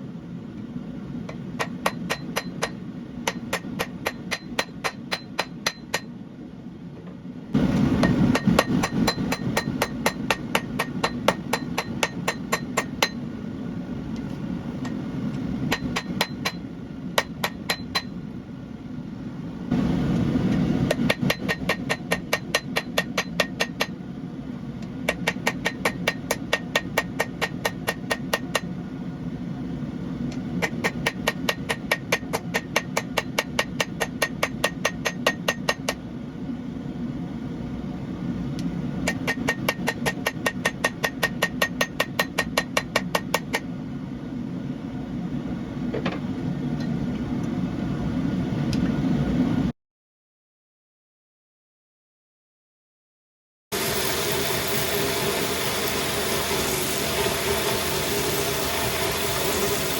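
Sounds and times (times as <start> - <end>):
hammer striking steel on anvil: 1.3 - 6.2, 8.0 - 13.2, 15.7 - 16.6, 17.2 - 18.2, 20.9 - 24.0, 25.1 - 28.8, 30.6 - 36.0, 39.0 - 43.7.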